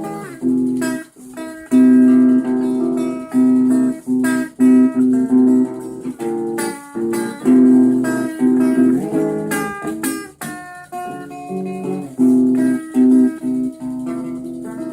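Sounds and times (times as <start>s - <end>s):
guitar plucked and strummed: 0.0s - 14.9s.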